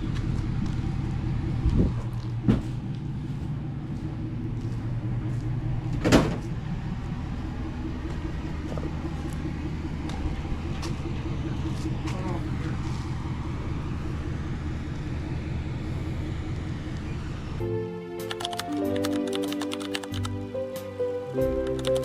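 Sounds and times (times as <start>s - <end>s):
engine idling: 0.0s - 17.6s
knocks and thuds: 2.4s - 2.8s, 5.9s - 6.6s.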